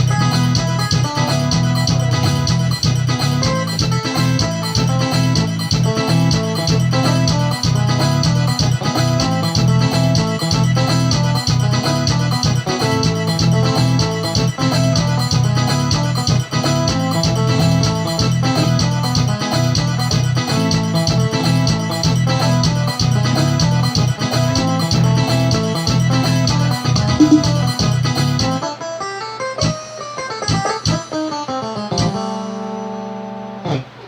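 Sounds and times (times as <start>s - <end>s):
electronic keyboard organ chords: 0.0s - 28.9s
bass line: 26.0s - 28.1s
steady percussive beat: 27.0s - 27.9s.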